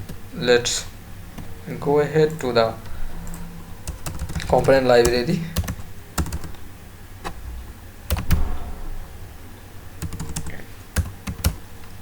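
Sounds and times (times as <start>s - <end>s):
faint low electrical hum: 0.0s - 12.0s
keyboard typing: 3.3s - 6.6s, 8.1s - 8.4s, 10.0s - 11.6s.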